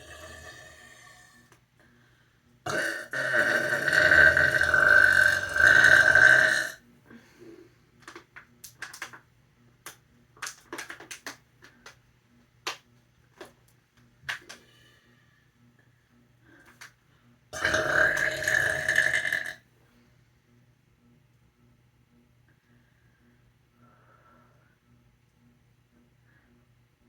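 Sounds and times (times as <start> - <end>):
loud burp: 0.0 - 1.5, 2.7 - 6.8, 17.6 - 19.6.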